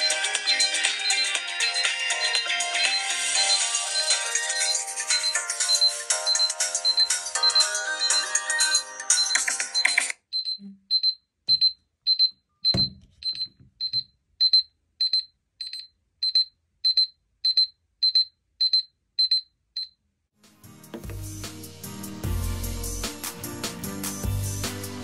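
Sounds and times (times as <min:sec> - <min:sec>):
musical phone ringtone: 0:00.0 - 0:10.5
phone alarm beeping: 0:00.0 - 0:20.0
knock: 0:12.7 - 0:13.1, 0:20.9 - 0:21.2.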